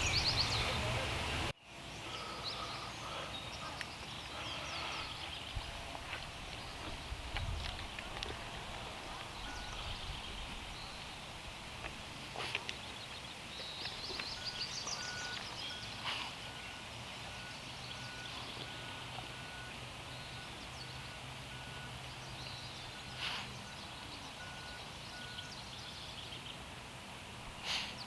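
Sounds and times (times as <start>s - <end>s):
birds chirping faintly: 0.0s - 26.8s
faint beeping: 14.1s - 26.0s.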